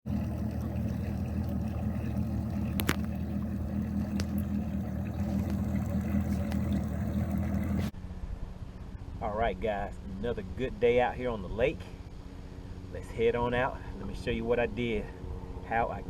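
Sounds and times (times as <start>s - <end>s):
boat engine running: 0.0s - 7.9s.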